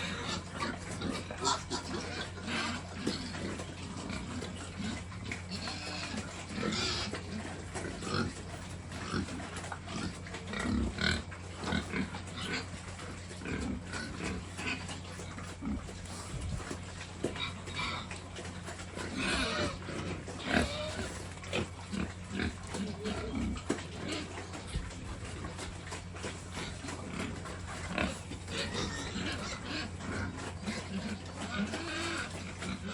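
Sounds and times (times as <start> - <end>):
pigs grunting and squealing: 0.0 - 32.9.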